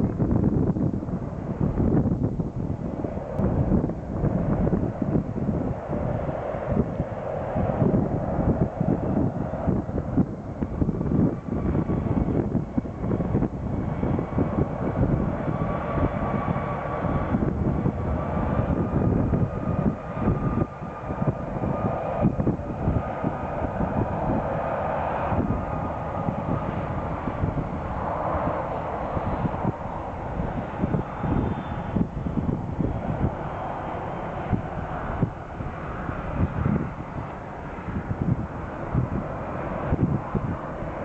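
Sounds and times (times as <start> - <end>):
airliner engines rumbling: 0.0 - 41.0
high engine whine: 0.0 - 41.0
wind buffeting microphone: 0.0 - 41.0.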